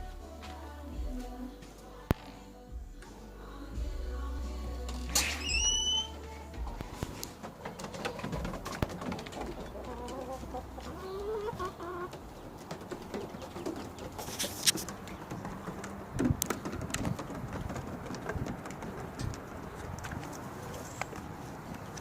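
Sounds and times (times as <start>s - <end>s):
hens clucking: 6.8s - 22.0s.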